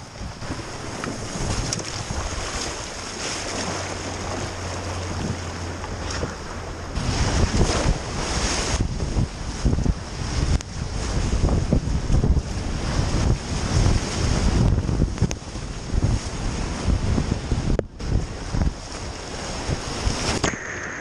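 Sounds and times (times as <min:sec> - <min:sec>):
river current rushing: 0:00.0 - 0:09.8, 0:18.0 - 0:21.0
wind buffeting microphone: 0:00.0 - 0:21.0.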